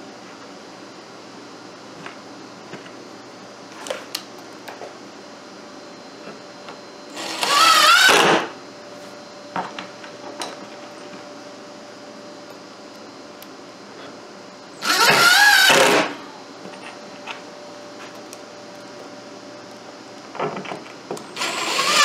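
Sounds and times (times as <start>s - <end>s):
power drill driving screw into wood: 7.2s - 8.5s, 14.8s - 16.2s, 21.4s - 22.0s.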